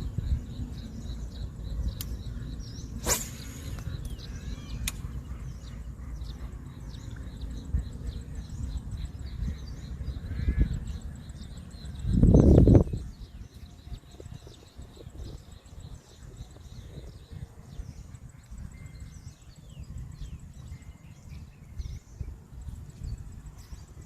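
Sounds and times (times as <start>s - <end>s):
birds calling: 0.0s - 24.0s
steady low rumble: 0.0s - 24.0s
sharp click: 1.9s - 2.2s, 4.8s - 5.1s.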